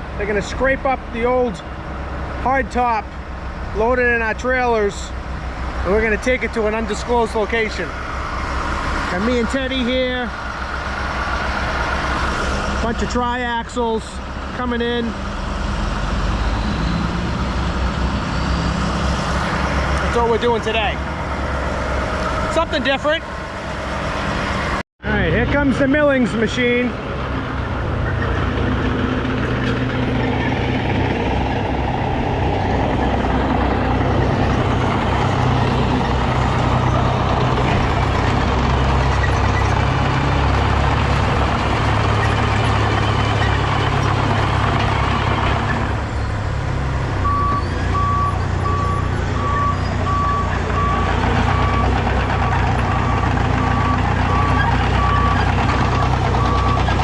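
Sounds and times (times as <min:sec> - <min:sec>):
heavy diesel engines running: 0:00.0 - 0:57.0
backup alarm beeping: 0:47.2 - 0:55.4.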